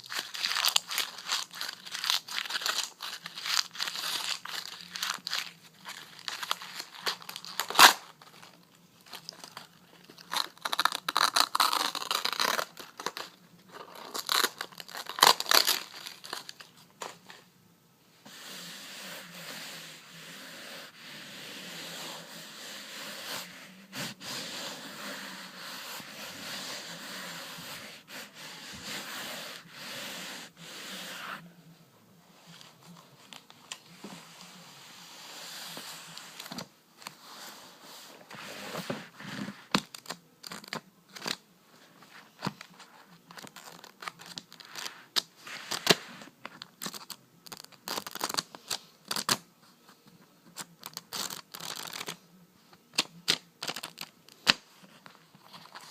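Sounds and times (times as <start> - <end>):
close rubbing and crinkling: 0.0 - 17.4, 18.2 - 31.5, 32.3 - 55.9.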